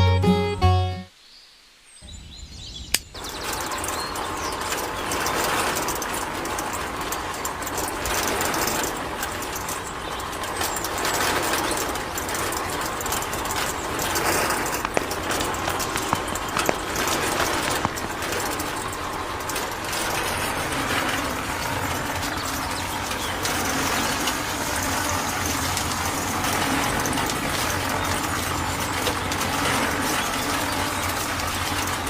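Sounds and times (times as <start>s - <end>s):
sharp click: 2.9s - 3.2s
small geared motor grinding: 3.2s - 32.0s.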